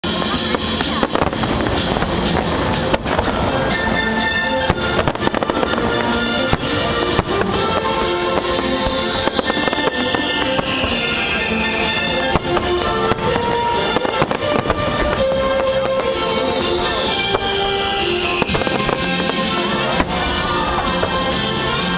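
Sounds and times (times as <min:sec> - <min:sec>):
falling firework whistle: 0:00.0 - 0:21.9
fireworks bursting: 0:00.0 - 0:21.9
loud music: 0:00.0 - 0:21.9.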